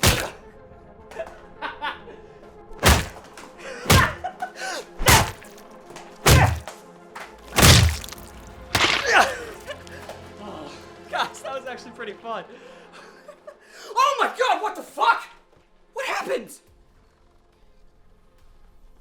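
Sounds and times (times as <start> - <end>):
heavy thuds of blows: 0.0 - 0.4, 2.8 - 3.3, 3.9 - 4.2, 5.0 - 5.6, 6.2 - 6.7, 7.5 - 9.6
background music: 0.0 - 15.3.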